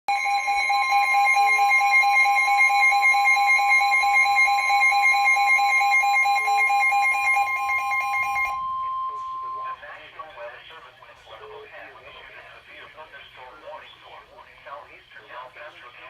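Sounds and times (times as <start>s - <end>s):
harsh two-tone alarm: 0.1s - 10.0s.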